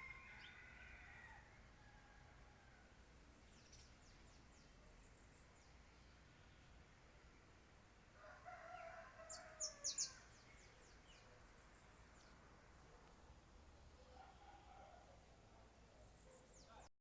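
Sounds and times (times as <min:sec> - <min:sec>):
rooster crowing: 0:00.0 - 0:02.8, 0:08.2 - 0:10.0.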